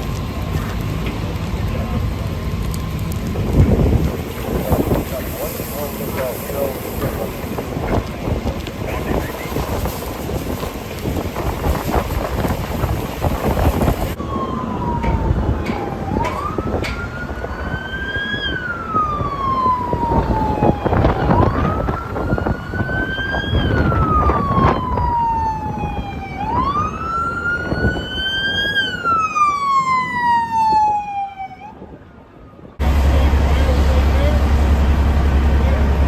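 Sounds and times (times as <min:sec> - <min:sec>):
steady low rumble: 0:00.0 - 0:14.2, 0:32.8 - 0:36.0
emergency vehicle siren wailing: 0:00.0 - 0:36.0.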